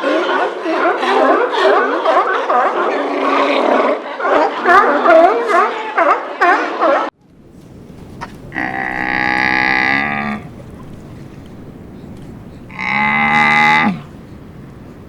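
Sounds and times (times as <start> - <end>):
cow mooing: 8.2 - 10.6, 12.7 - 14.1.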